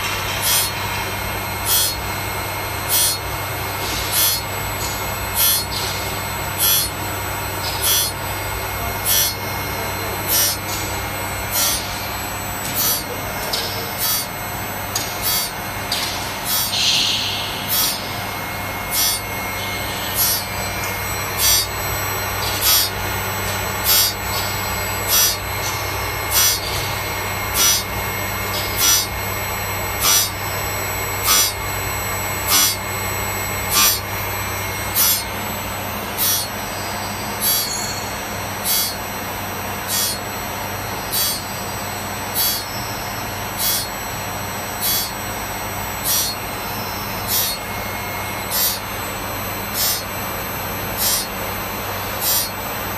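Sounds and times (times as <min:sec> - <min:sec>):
steady machine hum: 0:00.0 - 0:52.9
grinding wheel rasping on saw teeth: 0:02.9 - 0:13.3, 0:18.8 - 0:39.0, 0:39.8 - 0:44.2, 0:44.8 - 0:52.9.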